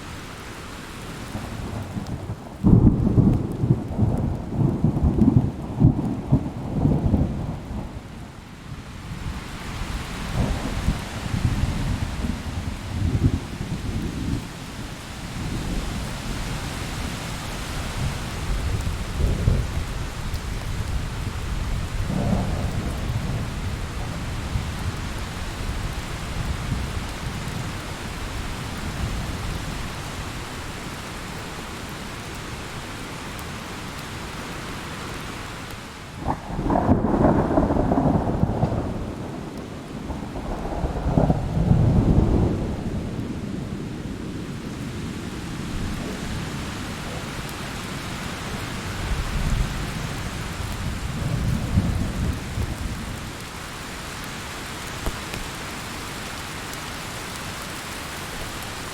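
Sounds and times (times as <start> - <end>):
steady rain: 0.0 - 58.9
thunder rolling: 21.6 - 24.8, 36.2 - 43.2
sharp thunderclap: 22.1 - 23.5, 36.2 - 39.5.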